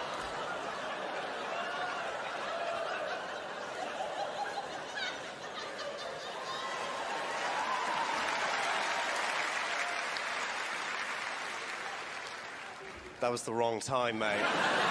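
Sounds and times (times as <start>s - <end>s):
audience laughing: 0.0s - 7.6s, 14.1s - 14.9s.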